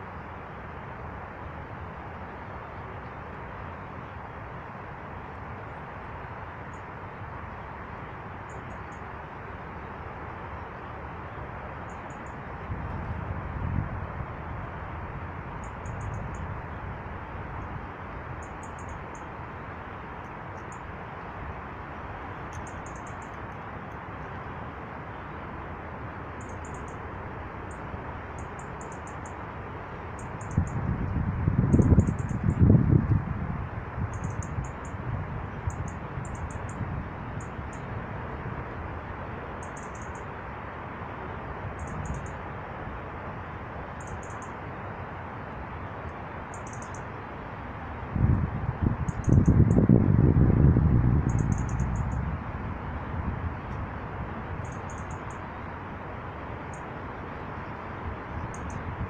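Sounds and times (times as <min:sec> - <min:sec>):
steady rushing background noise: 0:00.0 - 0:59.0
small birds high-pitched calls: 0:46.5 - 0:47.1.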